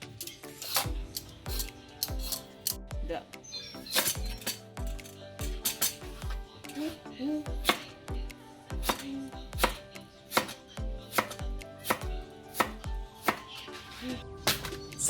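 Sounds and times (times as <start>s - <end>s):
background music with low beat: 0.0s - 15.0s.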